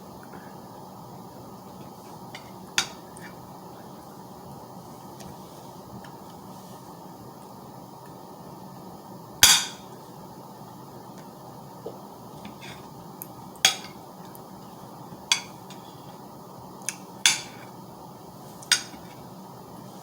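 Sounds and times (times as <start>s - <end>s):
cutlery clinking against dish: 13.7s - 14.0s, 15.3s - 15.8s, 16.9s - 17.7s, 18.7s - 19.1s.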